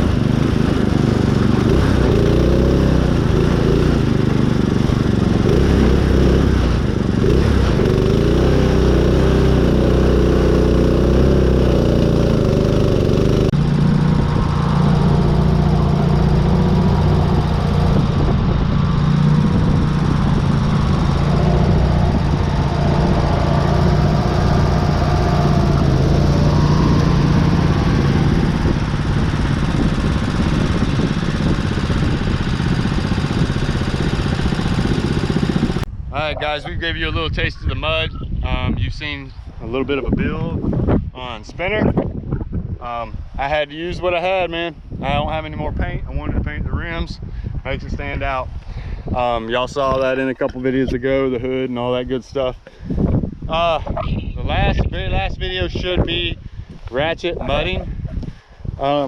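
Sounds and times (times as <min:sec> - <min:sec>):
riding mower engine under load: 0:00.0 - 0:36.8, 0:49.1 - 0:59.0.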